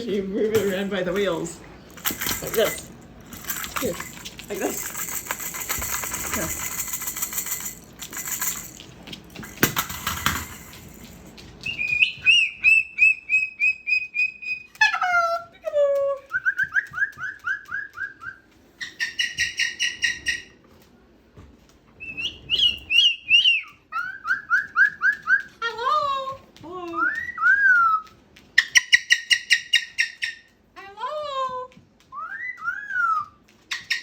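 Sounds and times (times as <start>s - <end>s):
rustling clatter: 0.4s - 11.8s.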